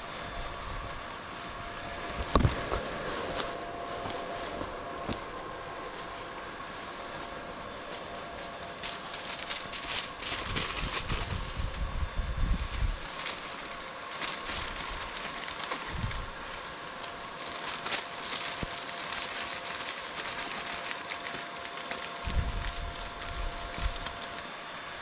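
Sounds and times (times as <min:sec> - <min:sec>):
crackling handling noise: 0:00.0 - 0:24.6
wind buffeting microphone: 0:10.4 - 0:13.1, 0:22.2 - 0:24.0.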